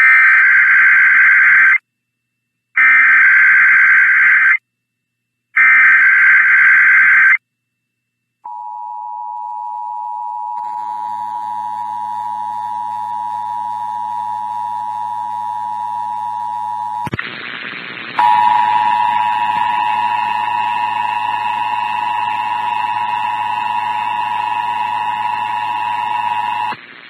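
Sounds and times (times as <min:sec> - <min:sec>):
radio hiss: 0:15.4 - 0:27.0
two-tone alert signal: 0:18.2 - 0:26.7.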